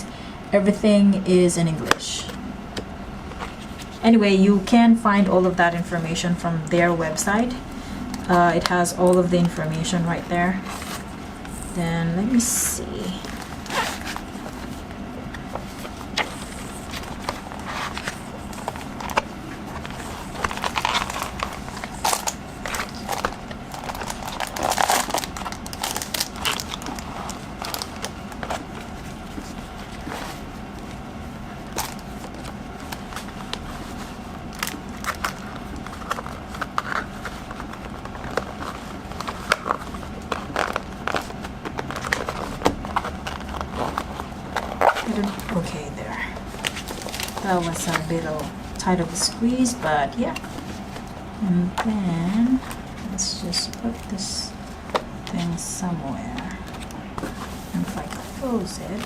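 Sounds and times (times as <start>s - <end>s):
paper rustling and crinkling: 13.0s - 31.0s, 31.6s - 51.2s, 56.3s - 59.0s.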